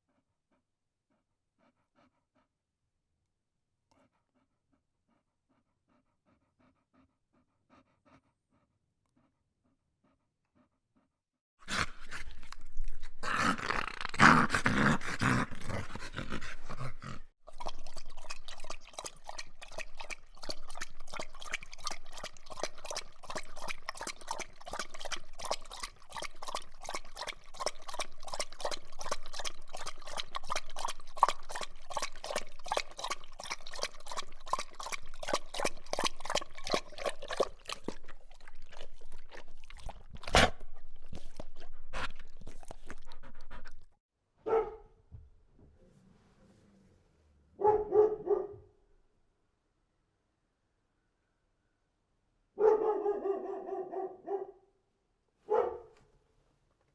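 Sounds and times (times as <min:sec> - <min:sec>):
dog making sounds: 0:03.9 - 0:44.9.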